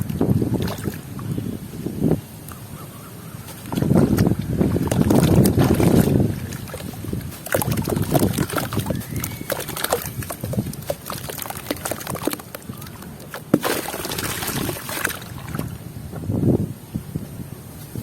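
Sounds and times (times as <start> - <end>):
water sloshing: 0.0 - 1.4, 3.4 - 15.9
wind rumbling on microphone: 0.0 - 18.0
charcoal blocks crumbling: 7.2 - 15.2.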